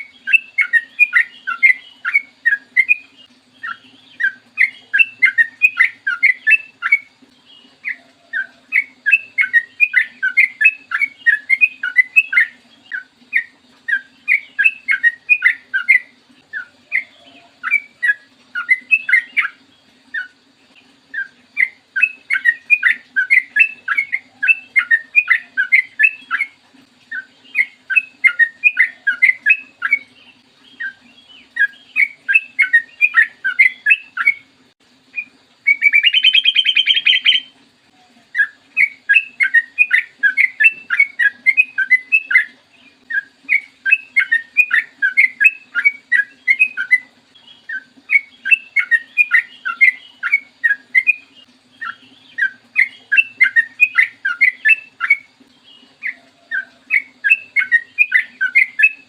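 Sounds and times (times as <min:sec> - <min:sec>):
bird singing bubbly chirps: 0:00.0 - 0:59.0.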